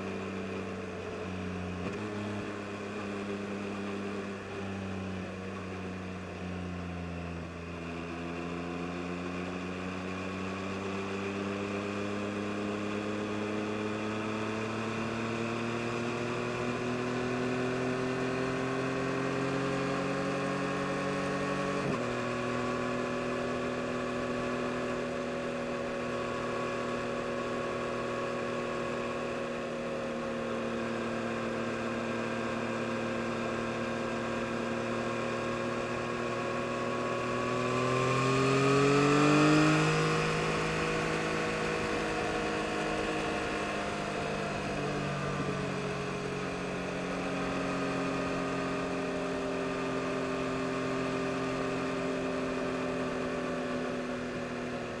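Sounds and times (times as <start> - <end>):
motorcycle engine revving: 30.9 - 53.6.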